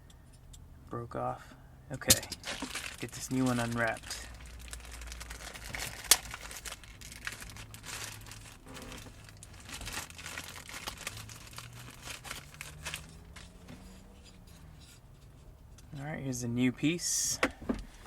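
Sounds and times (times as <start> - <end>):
packaging crinkling and tearing: 2.4 - 13.6.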